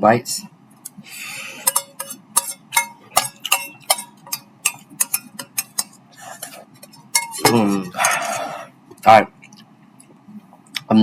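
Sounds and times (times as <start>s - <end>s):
utensil clinking against a bowl: 1.5s - 9.1s.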